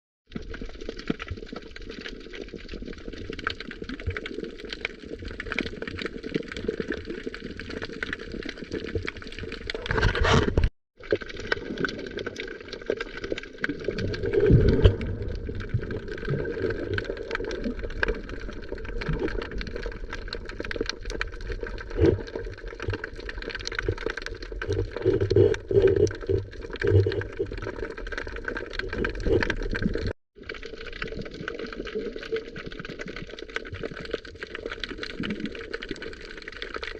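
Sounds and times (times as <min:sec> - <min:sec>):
water splashes: 0:11.0 - 0:36.9.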